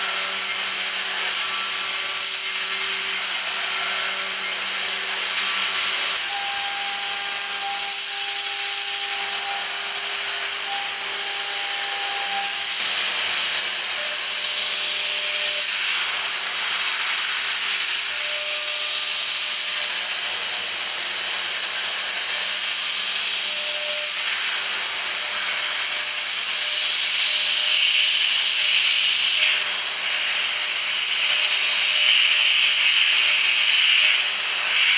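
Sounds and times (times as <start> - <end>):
steady machine tones: 0.0 - 14.1
milling machine cutting metal: 0.0 - 34.9.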